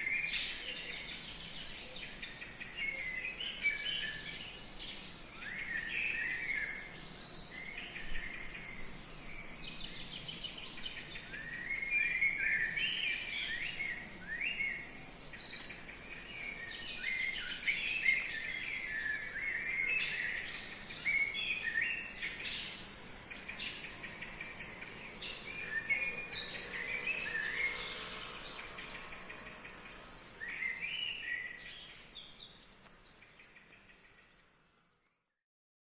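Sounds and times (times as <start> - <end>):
pulsing insect trill: 6.2 - 32.6.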